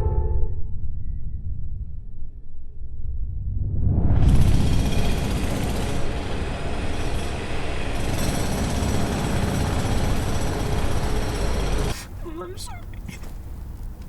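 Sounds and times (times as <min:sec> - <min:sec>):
mechanical rumble with rattling: 0:01.3 - 0:11.9.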